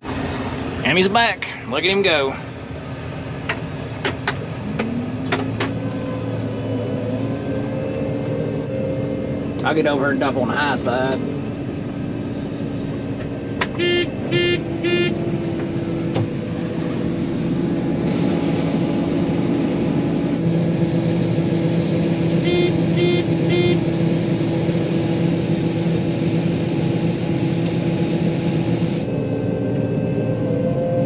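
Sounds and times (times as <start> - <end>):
combine harvester drone: 0.0 - 31.0
short beeps: 13.8 - 15.1, 22.4 - 23.8.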